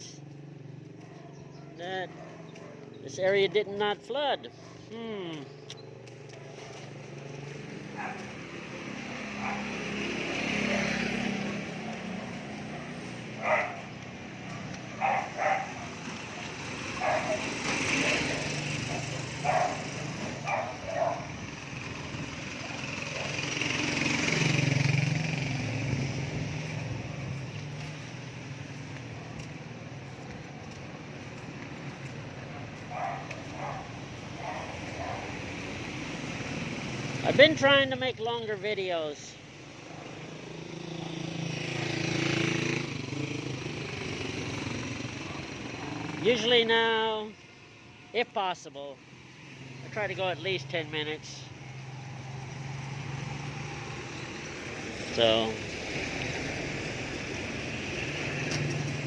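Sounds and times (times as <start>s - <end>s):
dog barking: 0.9s - 3.0s, 7.9s - 8.4s, 9.2s - 10.0s, 12.2s - 21.4s, 22.6s - 23.5s, 32.4s - 35.5s, 39.8s - 40.3s, 45.1s - 46.2s
small vehicle engines passing: 4.7s - 47.1s, 49.0s - 59.0s.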